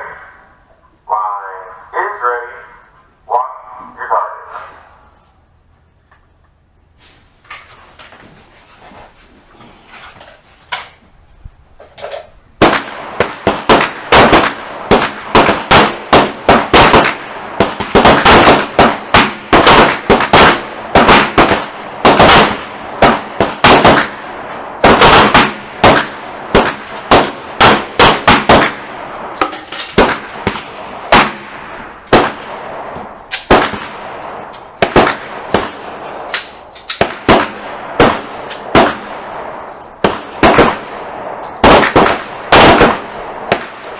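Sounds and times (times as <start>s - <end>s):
pistols firing: 12.6s - 43.9s.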